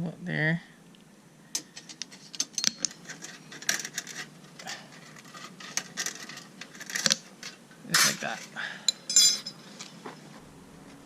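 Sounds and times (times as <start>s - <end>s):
metal clicks and scrapes: 1.5s - 9.9s.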